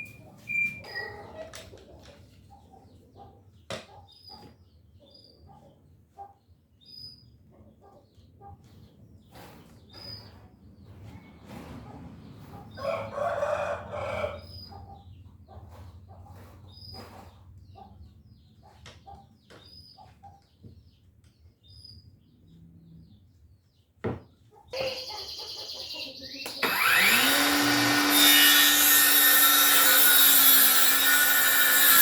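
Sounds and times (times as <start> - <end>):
rooster crowing: 12.8 - 14.5
bird chirps: 24.7 - 26.6.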